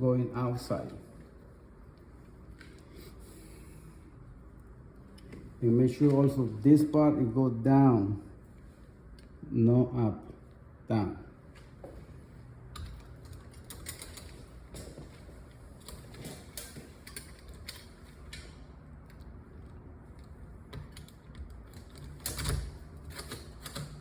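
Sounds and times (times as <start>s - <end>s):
metal deadbolt parts clicking: 12.8s - 14.5s, 20.8s - 24.0s.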